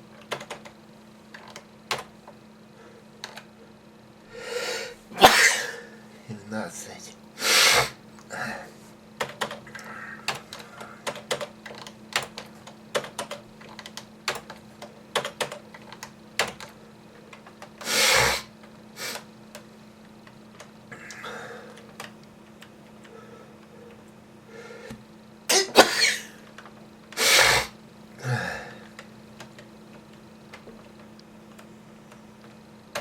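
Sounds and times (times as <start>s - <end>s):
keyboard typing: 0.1s - 2.2s, 9.2s - 17.8s, 21.7s - 23.2s
person coughing: 5.1s - 5.9s, 25.5s - 26.4s.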